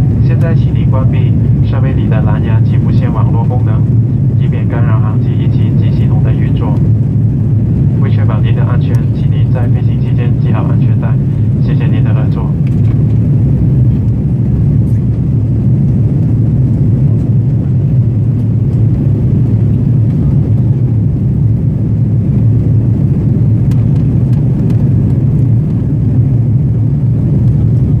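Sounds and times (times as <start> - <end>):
jet cabin engine rumble: 0.0 - 28.0.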